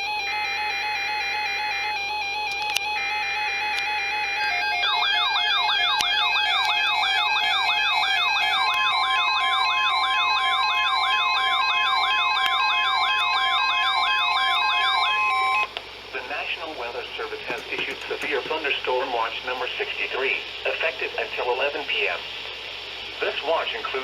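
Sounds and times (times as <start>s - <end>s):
electronic siren yelping: 0.0s - 15.7s
steady high tone: 0.0s - 21.6s.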